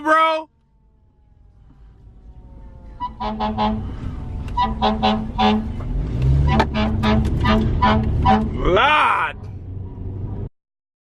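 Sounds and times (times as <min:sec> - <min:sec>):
engine rumble: 0:00.0 - 0:10.5
vehicle horn honking: 0:03.0 - 0:05.8, 0:06.4 - 0:08.6.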